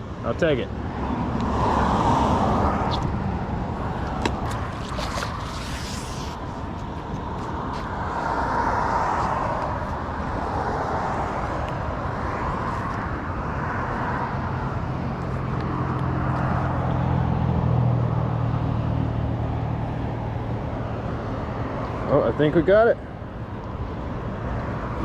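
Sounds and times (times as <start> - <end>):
heavy vehicle engine hum: 0.0 - 25.0
car tyre noise: 0.9 - 17.2.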